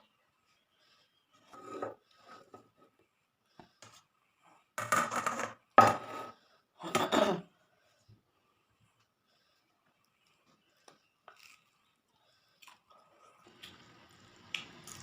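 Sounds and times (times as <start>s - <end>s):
plate scraping and clattering: 1.5s - 2.6s, 4.8s - 6.4s.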